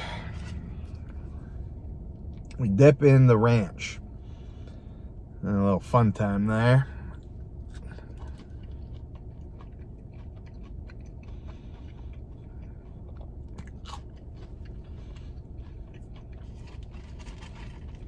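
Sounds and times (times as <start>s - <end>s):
person chewing crunchy food: 0.0s - 2.6s, 7.0s - 18.0s
steady low hum: 0.0s - 18.0s.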